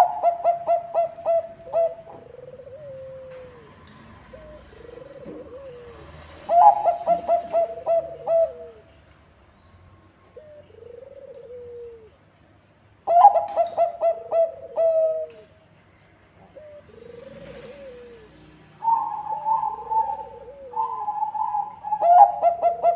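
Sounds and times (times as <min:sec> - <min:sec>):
dove cooing: 0:00.0 - 0:09.0, 0:10.3 - 0:12.2, 0:13.0 - 0:15.6, 0:16.4 - 0:22.9
soft falling coos: 0:16.6 - 0:18.4.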